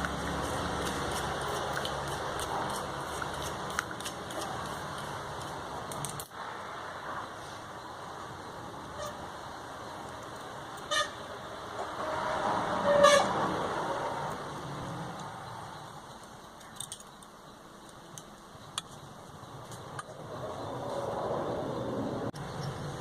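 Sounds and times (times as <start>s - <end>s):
electric horn tooting: 10.8s - 11.3s.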